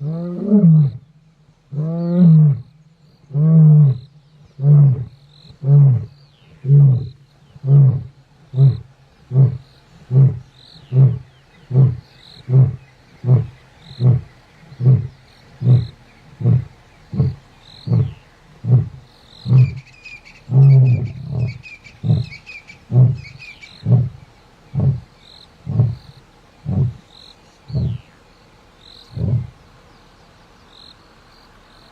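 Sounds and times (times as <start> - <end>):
lion roaring: 4.6 - 19.8, 20.5 - 27.0, 29.1 - 29.5.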